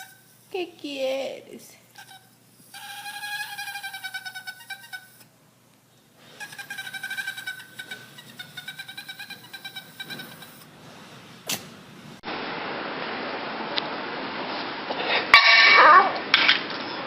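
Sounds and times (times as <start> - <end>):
dog whining: 0.0 - 0.3, 1.9 - 5.3, 6.4 - 10.7, 15.7 - 16.2.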